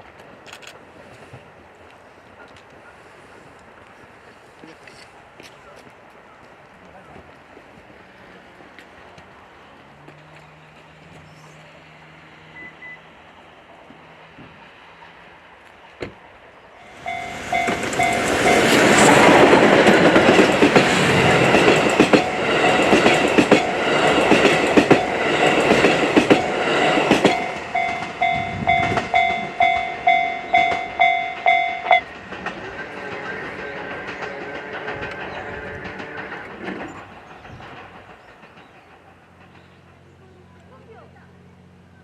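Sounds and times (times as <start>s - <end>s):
steam train passing at speed: 0.0s - 42.0s
pulsing alarm tone: 16.8s - 19.4s, 27.3s - 32.1s
train wheels clacking on rail joints: 16.8s - 40.4s.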